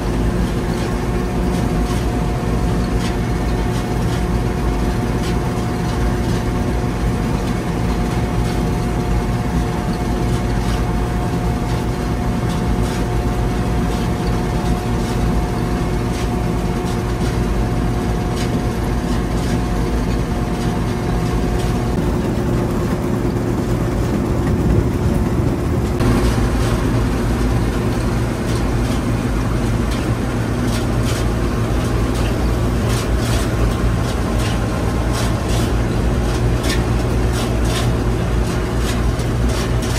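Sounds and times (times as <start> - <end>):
diesel engine running: 0.0 - 39.9
rattle and ticking: 18.3 - 39.9.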